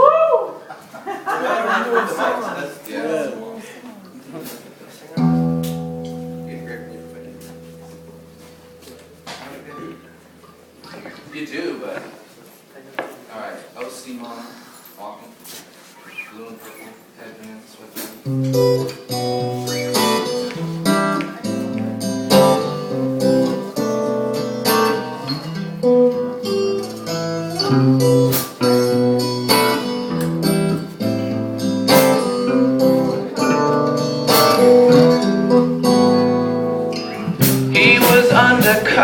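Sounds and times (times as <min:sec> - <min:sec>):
acoustic guitar strumming chords: 0:05.2 - 0:11.4, 0:18.3 - 0:39.0.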